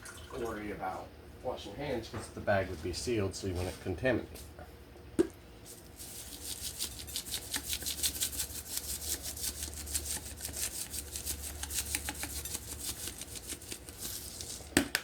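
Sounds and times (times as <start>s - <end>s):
hands rubbing while washing: 5.7s - 14.8s.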